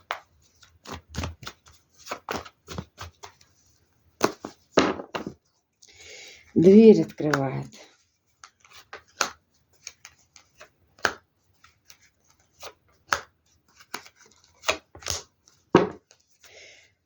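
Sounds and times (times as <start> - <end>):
cards being shuffled: 0.0 - 3.6, 6.6 - 16.3.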